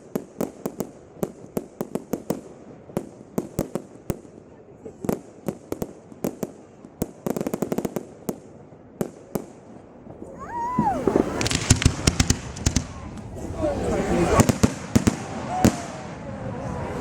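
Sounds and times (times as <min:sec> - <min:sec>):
fireworks bangs and crackling: 0:00.0 - 0:17.0
firework whistle: 0:10.2 - 0:12.4.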